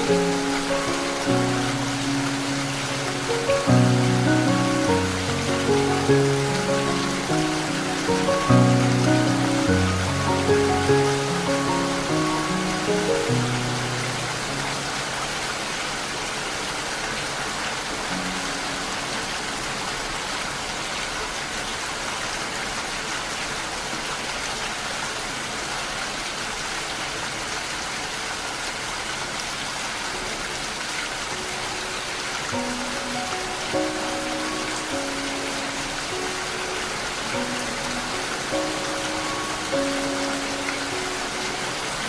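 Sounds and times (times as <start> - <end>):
soft musical notes: 0.0 - 15.1, 31.4 - 42.0
steady rain falling: 0.0 - 42.0.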